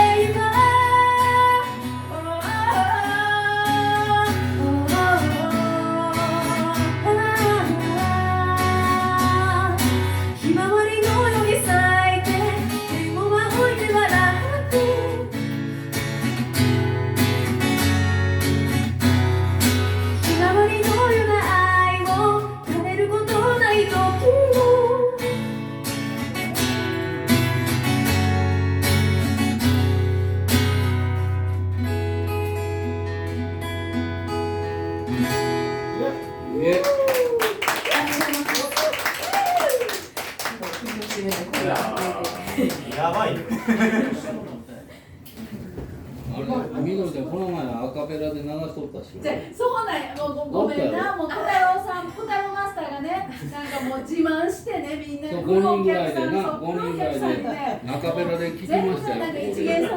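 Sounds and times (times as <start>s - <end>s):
acoustic guitar strumming: 0.0s - 36.7s.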